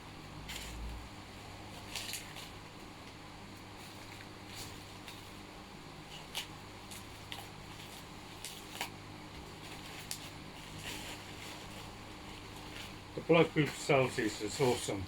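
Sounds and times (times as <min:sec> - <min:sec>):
steady low hum: 0:00.0 - 0:15.0
packaging rustles and clicks: 0:01.7 - 0:02.6, 0:06.1 - 0:15.0.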